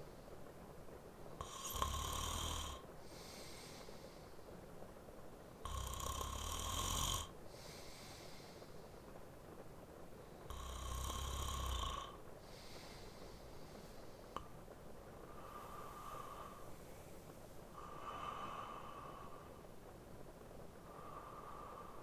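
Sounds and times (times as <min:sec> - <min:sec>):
soft breaths: 0:00.0 - 0:22.0
man snoring: 0:01.4 - 0:02.8, 0:05.7 - 0:07.3, 0:10.5 - 0:12.2.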